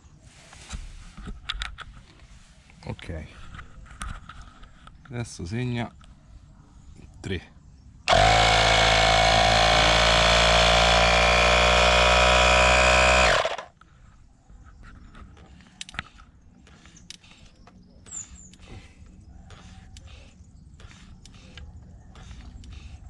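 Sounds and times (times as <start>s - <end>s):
air compressor motor buzzing: 8.1s - 13.7s.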